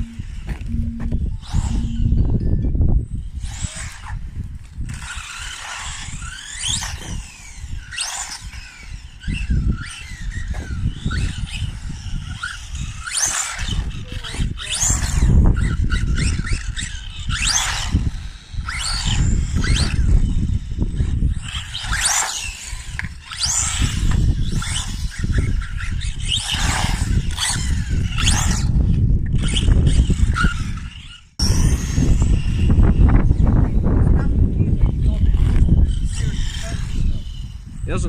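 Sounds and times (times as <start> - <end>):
low rumble: 0.0 - 7.9
rc car motors whining: 0.0 - 38.0.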